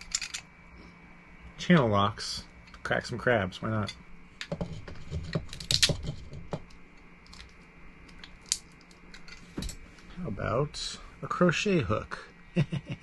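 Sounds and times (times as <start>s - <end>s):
crab shells cracking: 6.6s - 9.2s.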